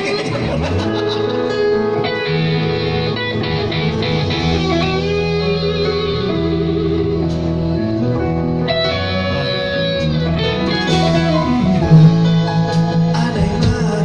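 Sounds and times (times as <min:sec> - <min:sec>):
instrumental guitar rock music: 0:00.0 - 0:14.0.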